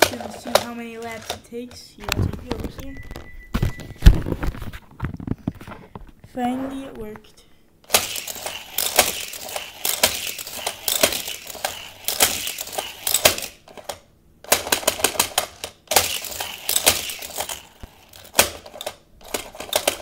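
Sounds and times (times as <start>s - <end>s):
toy car rattling over plastic track: 0.0s - 1.8s, 7.9s - 20.0s.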